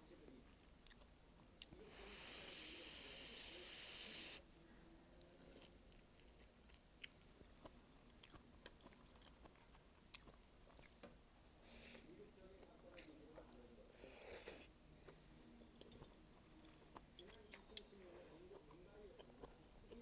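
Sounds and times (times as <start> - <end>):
faint chewing: 0.2 - 20.0
breathy hiss: 1.8 - 4.5.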